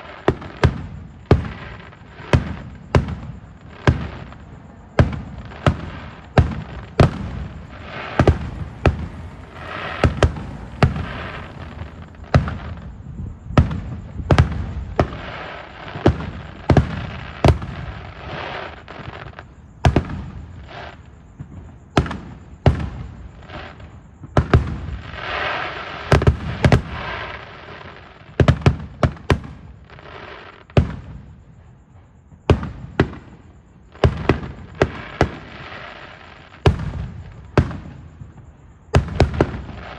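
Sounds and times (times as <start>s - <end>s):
fireworks crackling: 0.0s - 21.5s, 22.1s - 31.1s, 32.5s - 39.9s
fireworks bangs: 0.0s - 31.5s, 32.2s - 39.9s.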